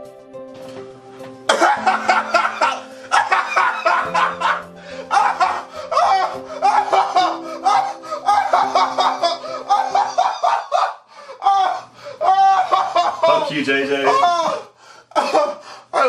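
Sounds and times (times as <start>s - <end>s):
background music with low notes: 0.0s - 10.8s
man laughing: 1.5s - 16.0s.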